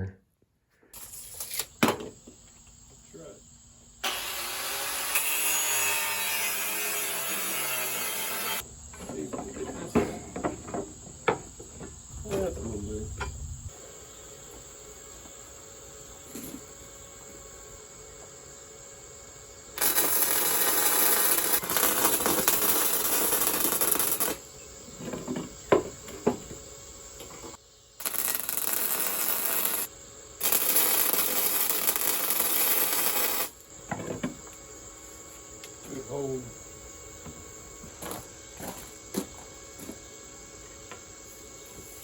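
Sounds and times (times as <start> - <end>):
crickets chirping: 0.6 - 7.8, 8.6 - 42.0
harsh hissing metalworking on rebar: 0.8 - 1.8, 4.0 - 8.7, 18.4 - 25.9, 27.2 - 33.8.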